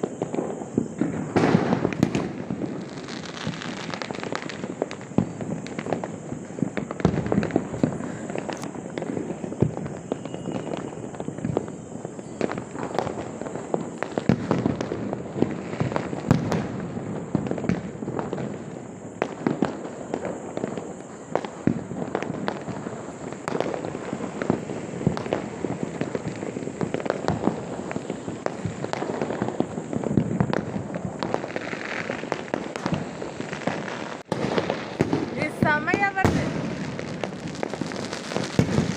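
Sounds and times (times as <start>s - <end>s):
fireworks popping and banging: 0.0s - 38.9s.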